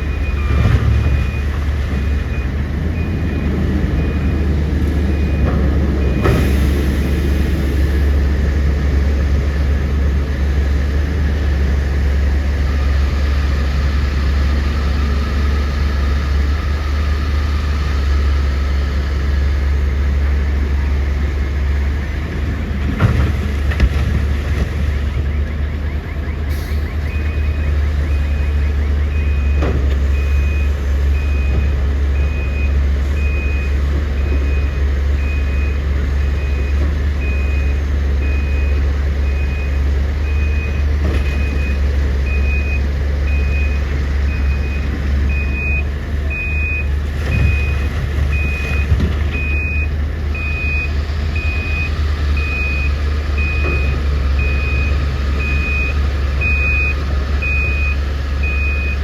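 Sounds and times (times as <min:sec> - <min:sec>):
diesel machinery rumbling: 0:00.0 - 0:59.0
back-up alarm beeping: 0:41.4 - 0:59.0.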